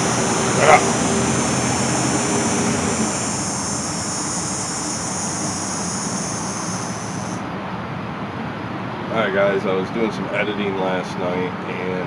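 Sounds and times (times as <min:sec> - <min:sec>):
high hiss: 0:00.0 - 0:07.5
low mechanical hum: 0:00.0 - 0:07.5.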